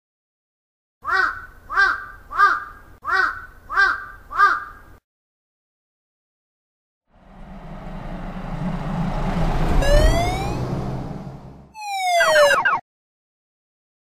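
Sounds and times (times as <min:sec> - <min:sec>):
animal call rising and falling: 0:07.2 - 0:12.8.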